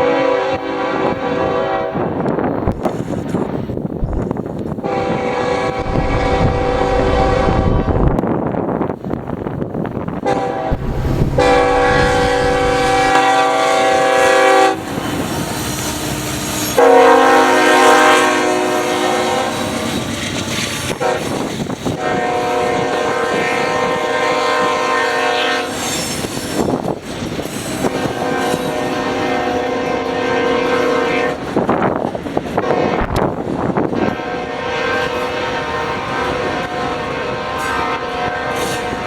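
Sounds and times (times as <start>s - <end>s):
locomotive air horn blasts: 0.0s - 2.2s, 4.8s - 8.2s, 10.2s - 19.8s, 20.9s - 21.3s, 21.9s - 26.0s, 27.8s - 31.6s, 32.6s - 33.2s, 33.9s - 39.0s
passing train noise: 0.0s - 39.0s.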